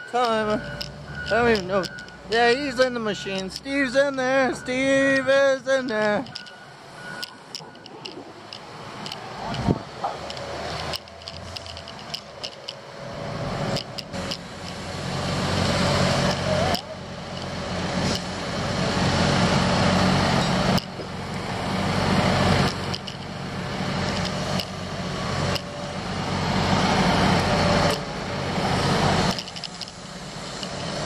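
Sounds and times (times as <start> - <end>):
diesel engine running: 0.0 - 31.0.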